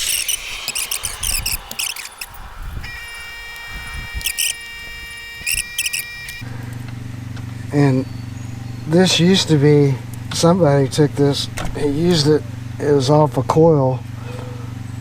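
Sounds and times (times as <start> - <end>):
tape pulling off roll: 0.0 - 4.6
faint high whine: 0.0 - 6.4.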